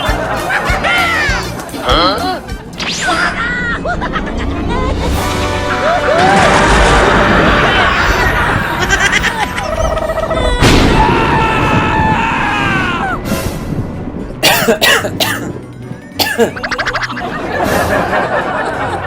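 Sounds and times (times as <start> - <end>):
background music: 0.0 - 19.0
sharp sudden sounds: 2.8 - 4.3, 5.0 - 9.0.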